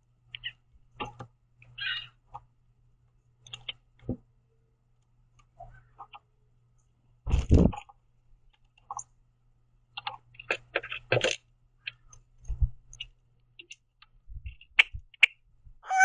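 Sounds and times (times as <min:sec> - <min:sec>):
beak pecking and cracking seeds: 0:03.4 - 0:04.0, 0:09.9 - 0:15.5.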